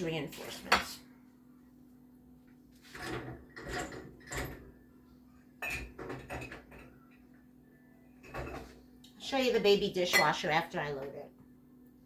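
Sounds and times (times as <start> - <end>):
dishes rattling in dishwasher rack: 2.9 - 4.7, 5.6 - 6.9.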